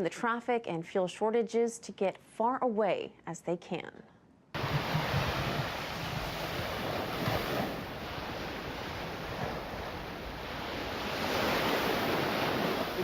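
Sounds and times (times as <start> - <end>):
ocean surf: 4.6 - 13.0
rushing wind: 4.6 - 13.0
wind buffeting microphone: 4.6 - 13.0.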